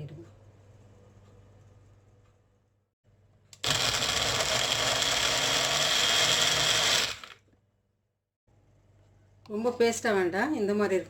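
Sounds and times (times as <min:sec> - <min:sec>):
mixer grinder running: 0:03.6 - 0:07.4.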